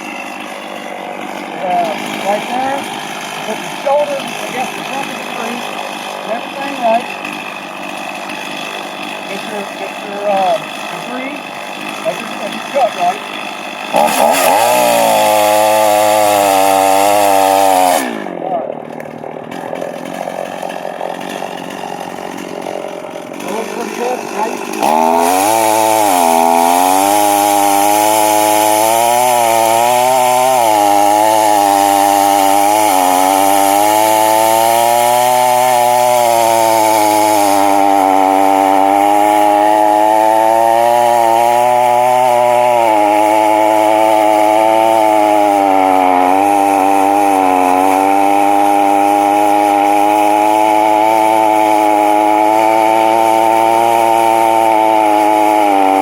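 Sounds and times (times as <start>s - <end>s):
chainsaw cutting into wood: 0.0s - 56.0s.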